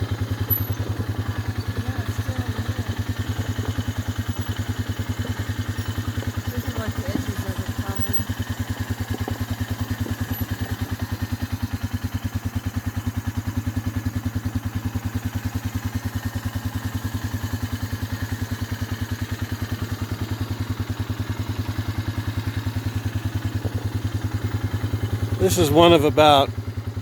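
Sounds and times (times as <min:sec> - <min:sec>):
small engine idling: 0:00.0 - 0:27.0.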